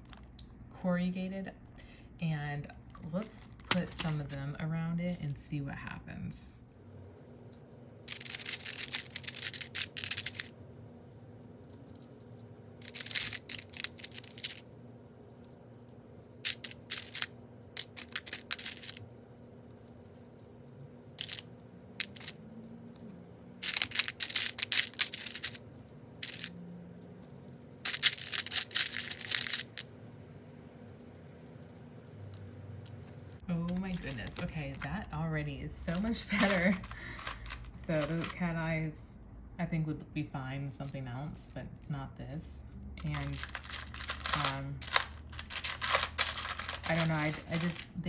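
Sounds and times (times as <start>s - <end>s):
seashells clicking and rattling: 7.6s - 10.5s, 11.6s - 14.6s, 15.3s - 19.0s, 19.8s - 29.8s, 36.4s - 38.3s, 43.0s - 47.9s.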